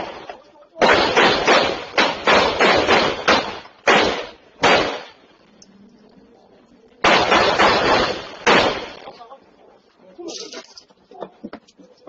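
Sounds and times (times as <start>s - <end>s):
gunshots echoing: 0.0s - 5.4s, 7.0s - 9.1s.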